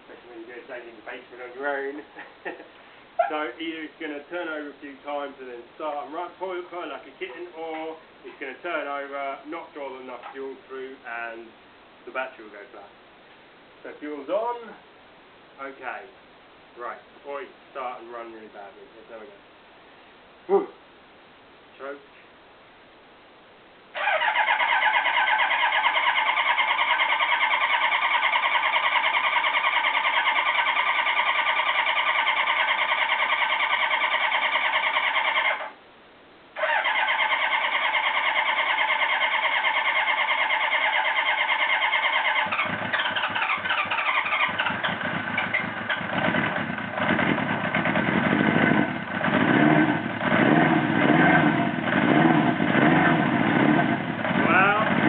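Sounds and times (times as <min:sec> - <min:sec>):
electric starter cranking engine: 0:24.0 - 0:35.7, 0:36.6 - 0:55.0
motorcycle engine running unevenly: 0:42.3 - 0:55.0.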